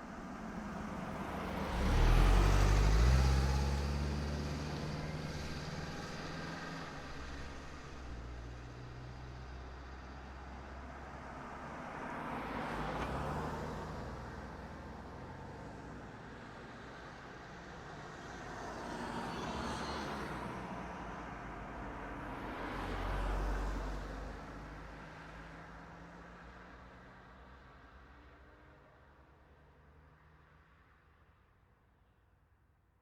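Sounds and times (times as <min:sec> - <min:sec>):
cars driving past: 0:00.1 - 0:15.9.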